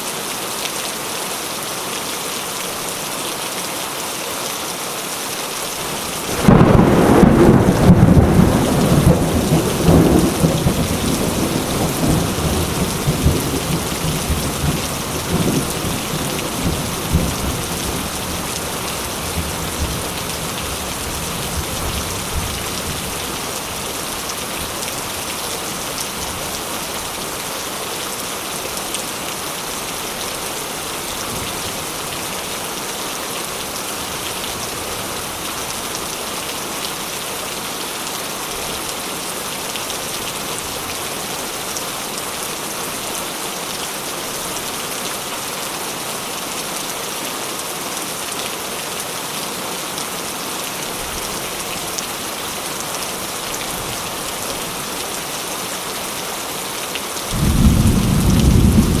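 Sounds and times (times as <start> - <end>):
heavy rain: 0.0 - 59.0
thunder rumbling: 6.2 - 18.4, 57.3 - 59.0.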